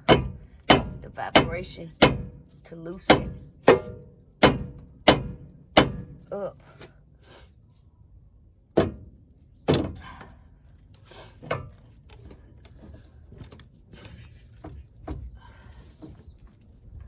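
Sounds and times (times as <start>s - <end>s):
hammer striking metal: 3.1s - 6.1s.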